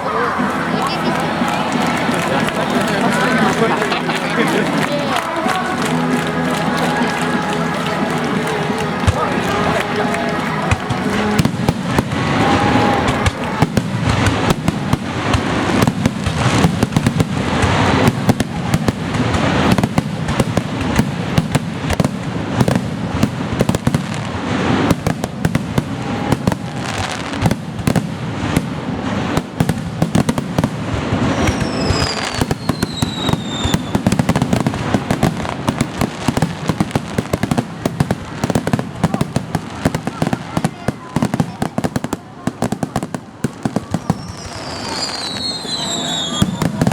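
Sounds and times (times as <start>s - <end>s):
fireworks bursting with bangs: 0.0s - 46.9s
high falling whistle: 44.2s - 46.8s.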